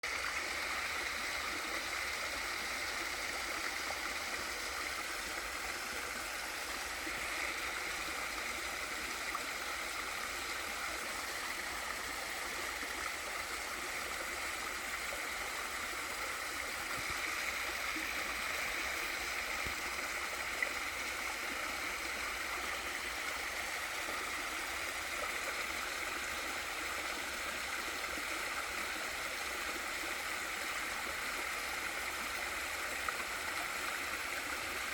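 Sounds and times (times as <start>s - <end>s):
water gurgling: 0.0s - 34.9s.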